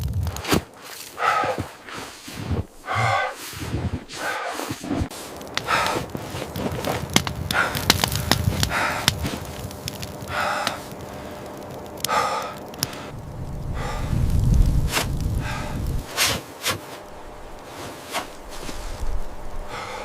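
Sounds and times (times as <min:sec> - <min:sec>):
heavy breaths or snorts: 0:00.4 - 0:16.9, 0:19.7 - 0:20.0
low rumble: 0:05.1 - 0:16.2.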